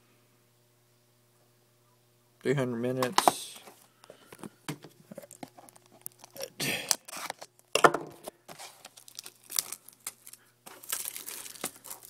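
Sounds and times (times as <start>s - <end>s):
plastic packaging crinkling: 4.3s - 12.0s.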